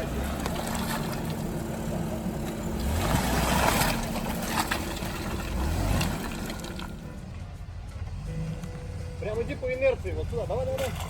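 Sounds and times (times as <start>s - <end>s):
off-road vehicle engine running: 0.0s - 11.0s.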